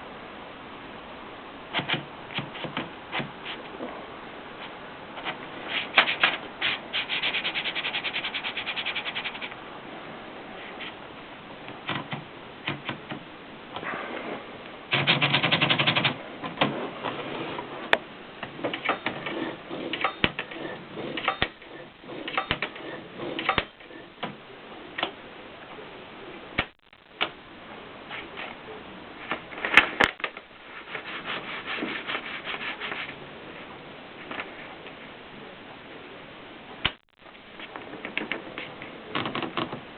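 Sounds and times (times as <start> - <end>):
rapid even typewriter clicking: 1.7 - 3.3, 14.9 - 16.2
typewriter keys clacking: 14.9 - 16.2.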